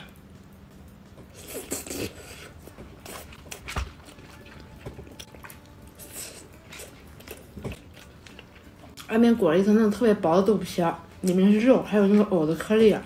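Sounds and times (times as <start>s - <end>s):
person chewing food: 1.2s - 9.1s.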